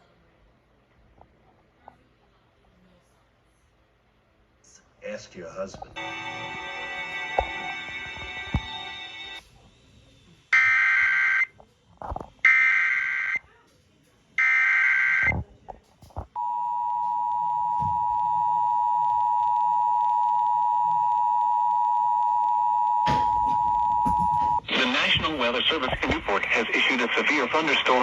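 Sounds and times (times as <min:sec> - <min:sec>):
two-tone attention signal: 0:16.4 - 0:24.6.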